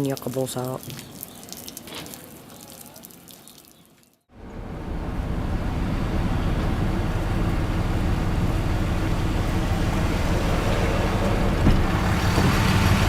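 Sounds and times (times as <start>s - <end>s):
road and engine rumble in vehicle: 4.3s - 13.0s.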